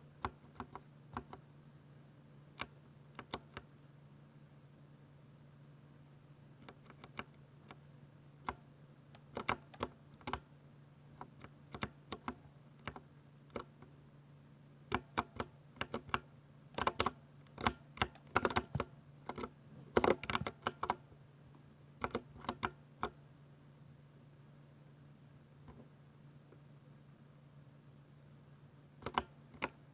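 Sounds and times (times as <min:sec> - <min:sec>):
steady low hum: 0:00.0 - 0:29.9
mechanical keyboard typing: 0:00.2 - 0:01.4, 0:16.8 - 0:21.0, 0:22.0 - 0:23.2, 0:29.0 - 0:29.8.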